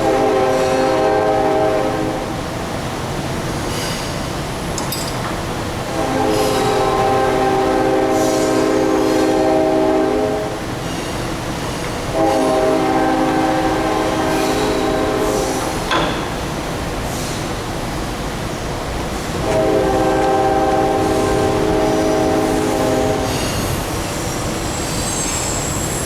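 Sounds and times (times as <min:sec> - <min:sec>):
train horn blasts: 0:00.0 - 0:02.5, 0:05.8 - 0:10.8, 0:12.0 - 0:16.3, 0:19.2 - 0:23.8
train passing rumble: 0:00.0 - 0:26.0.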